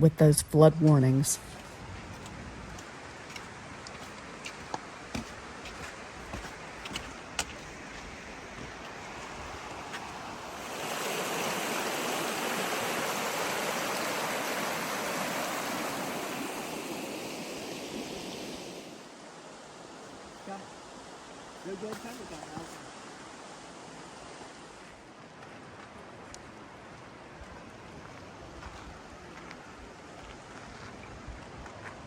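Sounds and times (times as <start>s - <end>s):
river rushing over rocks: 2.1s - 21.3s.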